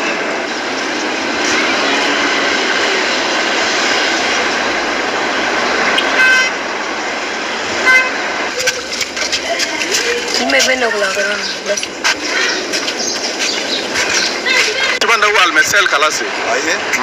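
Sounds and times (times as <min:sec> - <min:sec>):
street traffic: 0:00.0 - 0:17.0
vehicle horn honking: 0:06.0 - 0:06.6, 0:07.8 - 0:08.9.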